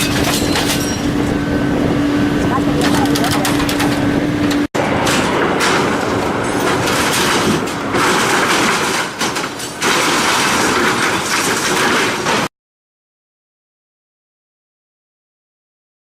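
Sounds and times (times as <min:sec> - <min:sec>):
metal shredding machinery grinding: 0:00.0 - 0:12.5.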